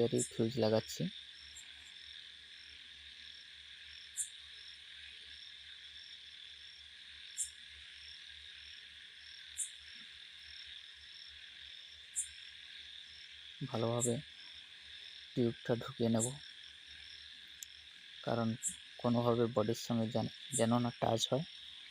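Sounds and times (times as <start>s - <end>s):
crickets chirring: 0.0s - 21.9s
faint sharp high ticks: 17.6s - 17.8s.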